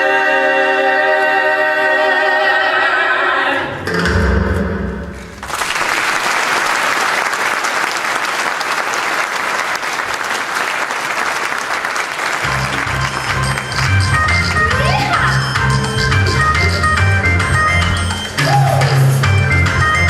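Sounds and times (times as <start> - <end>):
audience applauding: 5.3 - 16.0
music: 12.4 - 20.0.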